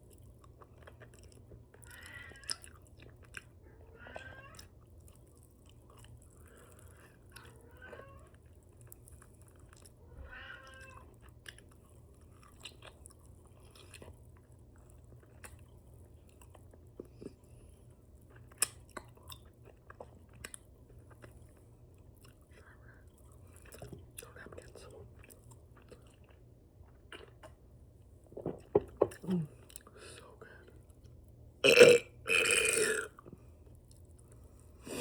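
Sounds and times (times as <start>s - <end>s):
open-mouth chewing and lip smacking: 0.0s - 3.6s, 4.5s - 10.0s, 11.0s - 28.2s, 32.5s - 34.6s.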